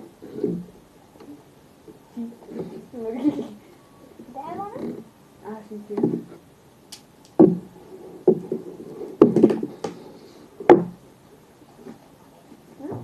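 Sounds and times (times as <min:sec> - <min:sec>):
faint rustling: 0:00.0 - 0:06.6, 0:07.3 - 0:13.0
sharp knocks and thumps: 0:05.9 - 0:06.4, 0:07.4 - 0:11.0.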